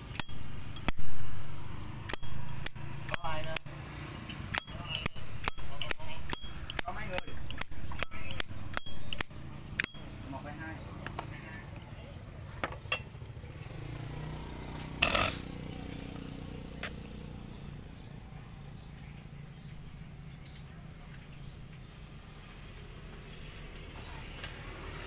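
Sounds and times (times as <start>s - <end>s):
low steady background noise: 0.0s - 25.0s
metal lighter clicks: 0.1s - 1.4s, 2.0s - 3.7s, 4.4s - 10.1s.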